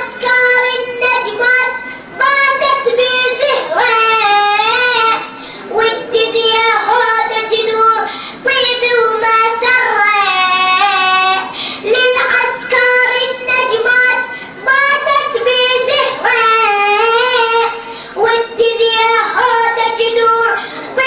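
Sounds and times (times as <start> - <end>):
high voice chanting: 0.0 - 21.0.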